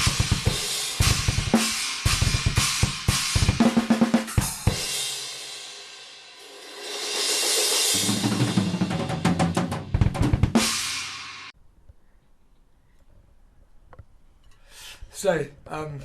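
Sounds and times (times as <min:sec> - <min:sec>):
rapid drum hits: 0:00.0 - 0:05.0, 0:07.3 - 0:11.5.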